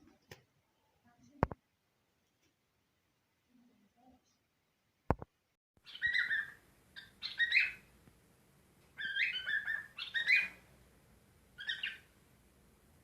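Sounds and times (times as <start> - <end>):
cockatiel chirping: 5.8 - 7.9, 9.0 - 10.6, 11.6 - 12.1.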